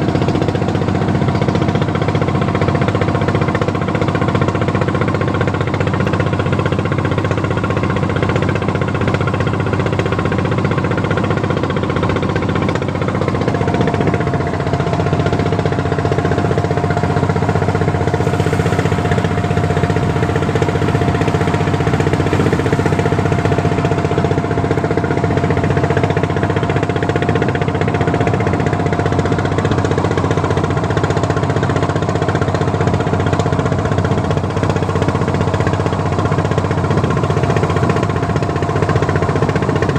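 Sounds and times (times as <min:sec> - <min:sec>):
boat engine running: 0:00.0 - 0:39.9
steady higher tone: 0:13.7 - 0:26.8.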